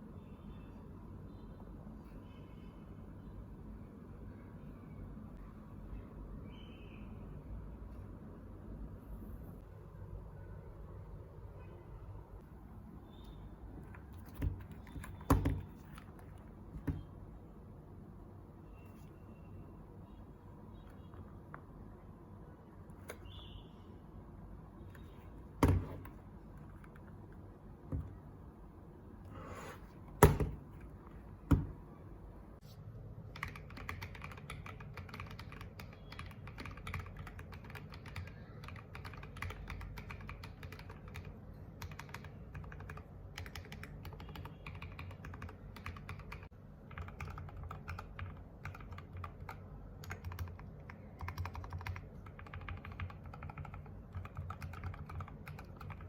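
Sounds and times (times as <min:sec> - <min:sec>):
keyboard knocks: 0:14.3 - 0:15.7, 0:16.8 - 0:17.1, 0:25.6 - 0:26.2, 0:30.2 - 0:30.7, 0:31.4 - 0:31.8
rapid typing on mechanical keyboard: 0:33.3 - 0:56.0.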